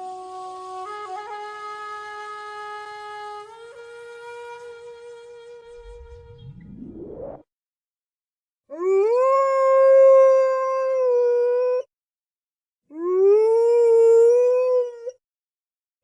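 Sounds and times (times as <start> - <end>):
wolf howls: 8.7 - 11.9.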